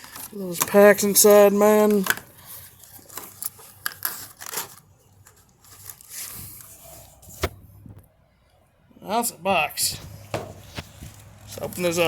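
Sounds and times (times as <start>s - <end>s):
cardboard box rustling and scraping: 10.0s - 11.6s.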